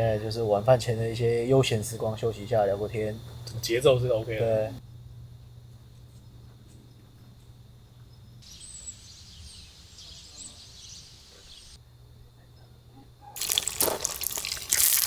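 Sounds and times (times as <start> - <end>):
faint bird chirps: 6.2 - 13.4
high hiss: 8.4 - 11.8
food sizzling in hot oil: 13.4 - 15.0.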